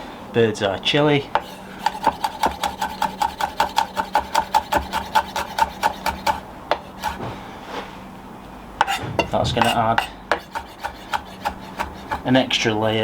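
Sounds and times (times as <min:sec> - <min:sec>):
knocks: 0:08.8 - 0:12.3.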